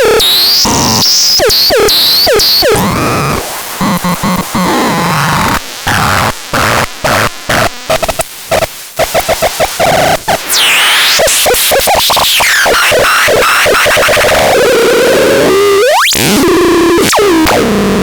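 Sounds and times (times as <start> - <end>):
rising electronic sweep: 10.5 - 13.0
falling electronic sweep: 10.5 - 14.3
stuttering electronic pulses: 10.5 - 14.4.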